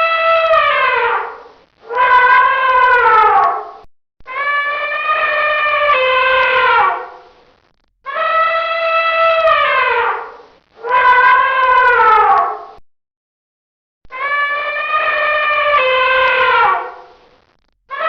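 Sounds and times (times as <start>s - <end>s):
elephant trumpeting: 4.4s - 7.2s, 14.2s - 17.1s.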